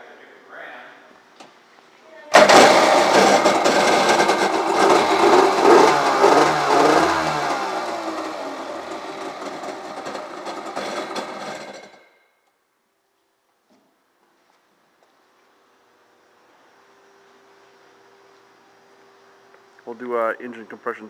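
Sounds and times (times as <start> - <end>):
watercraft engine revving: 2.4 - 11.9.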